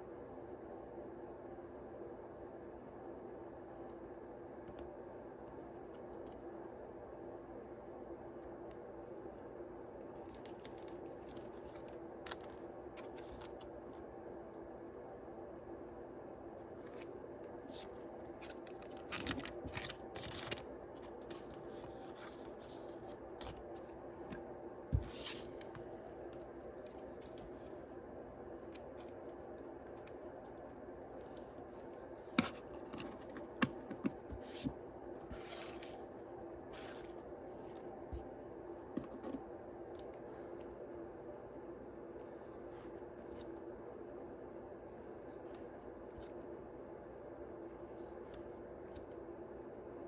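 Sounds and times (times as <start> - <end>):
steady low hum: 0.0 - 50.0
card packs crinkling: 10.2 - 13.7, 17.7 - 23.8.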